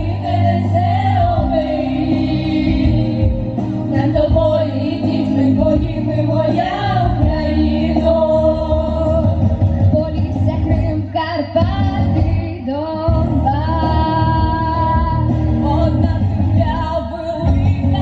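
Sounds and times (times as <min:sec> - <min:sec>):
vocal group singing: 0:00.0 - 0:09.7.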